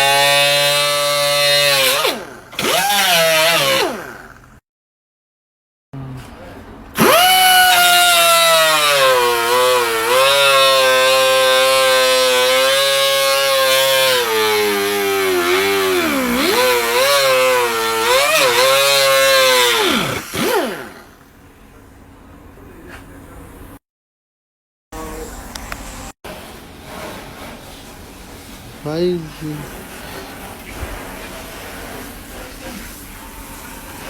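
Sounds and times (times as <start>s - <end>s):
high-pitched electric power tool: 0.0s - 4.5s, 7.0s - 21.2s.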